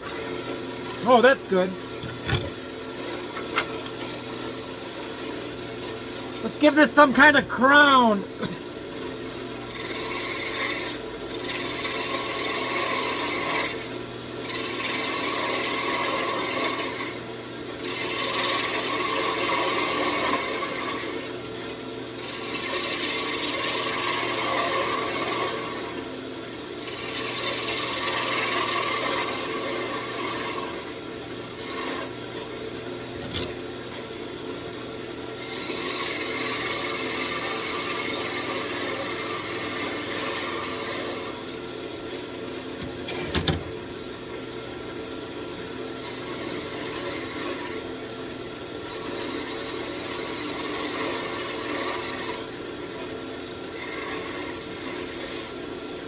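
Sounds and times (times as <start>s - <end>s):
tool scraping spinning wood: 9.7s - 13.9s, 14.5s - 17.2s, 17.8s - 21.3s, 22.2s - 26.0s, 26.8s - 31.0s, 31.6s - 32.1s, 33.1s - 33.6s, 35.4s - 41.6s, 46.1s - 47.9s, 48.8s - 52.4s, 53.8s - 55.6s
wood lathe motor hum: 9.7s - 21.4s, 22.2s - 26.1s, 26.8s - 32.1s, 35.4s - 41.6s, 46.0s - 47.9s, 48.8s - 55.6s.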